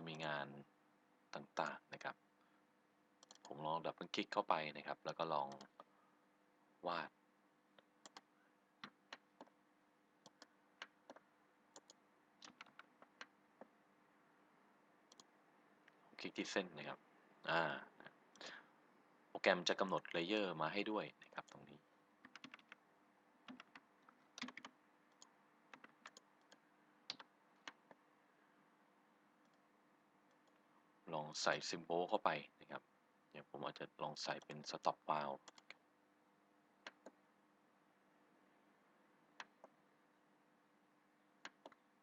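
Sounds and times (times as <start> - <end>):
faint steady hum: 0.0 - 42.0
computer mouse clicking: 3.2 - 3.6, 5.5 - 5.9, 7.8 - 9.6, 10.2 - 13.7, 15.1 - 15.3, 22.2 - 22.8, 23.4 - 28.0, 29.4 - 29.6, 35.4 - 35.8, 36.8 - 37.2, 39.4 - 39.8, 41.4 - 41.8.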